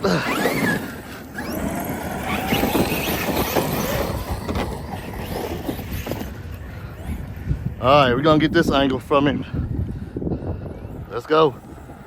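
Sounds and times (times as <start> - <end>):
electric motor whining: 0.0 - 8.7.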